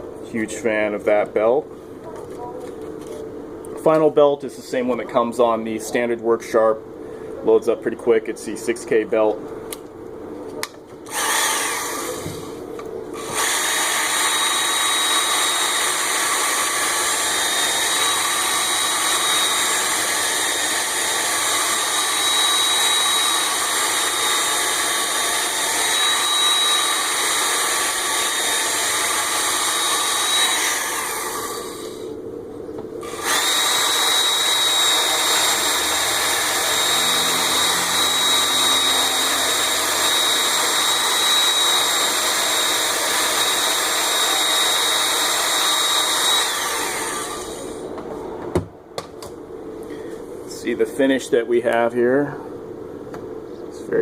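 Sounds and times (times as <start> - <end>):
belt sharpener motor whine: 11.1 - 12.6, 13.2 - 32.2, 33.0 - 47.8.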